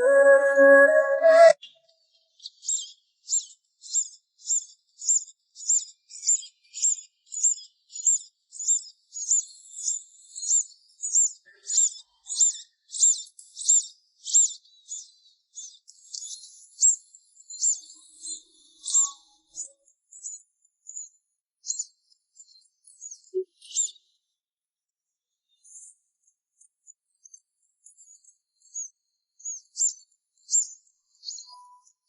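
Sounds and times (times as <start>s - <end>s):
bird high thin call: 0.0s - 1.6s.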